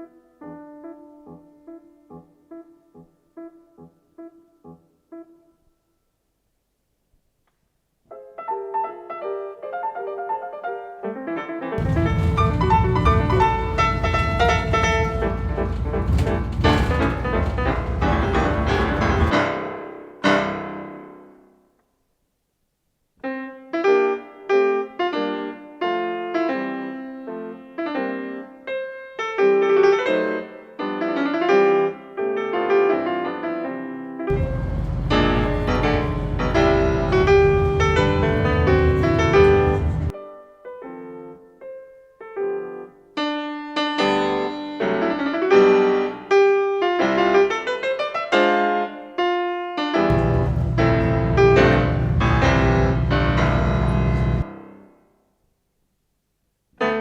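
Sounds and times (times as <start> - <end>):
piano music with quick melody: 0.0 - 5.7, 8.1 - 21.4, 23.2 - 55.0
steady low bass: 11.8 - 19.3, 34.3 - 40.1, 50.1 - 54.5.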